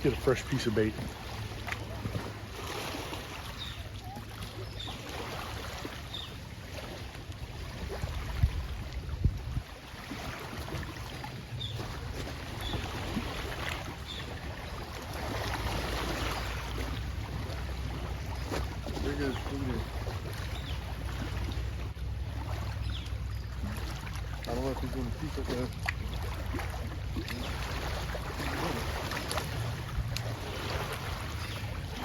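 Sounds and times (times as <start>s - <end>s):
wind rumble on microphone: 7.5s - 10.8s.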